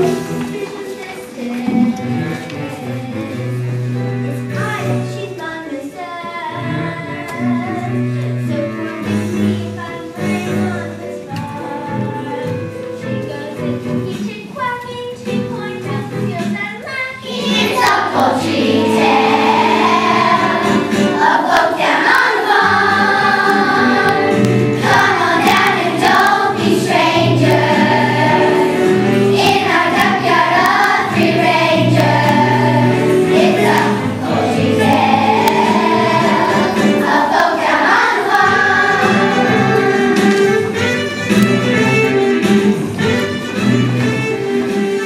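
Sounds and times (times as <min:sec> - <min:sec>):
children's choir singing: 0:00.0 - 0:03.6, 0:17.2 - 0:40.9
instrumental accompaniment: 0:00.0 - 0:45.0.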